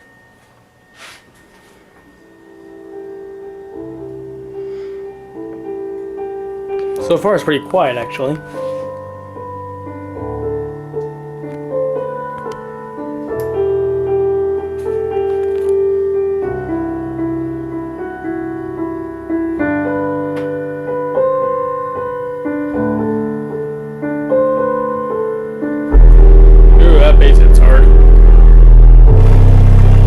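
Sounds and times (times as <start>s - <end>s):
soft piano-like keyboard chords: 0.0s - 30.0s
bass: 25.9s - 30.0s.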